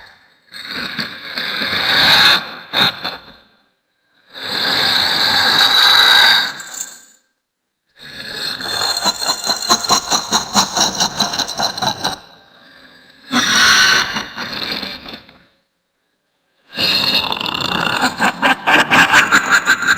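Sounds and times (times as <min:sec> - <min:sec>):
monster voice laughing: 0:08.6 - 0:12.4, 0:13.3 - 0:15.1, 0:17.0 - 0:19.9.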